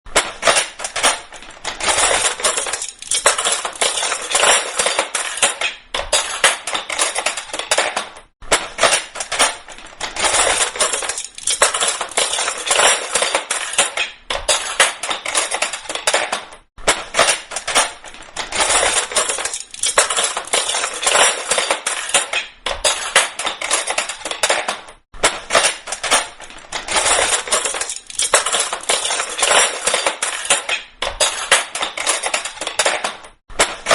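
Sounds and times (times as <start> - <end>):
metal cutlery clattering: 0.2 - 33.9.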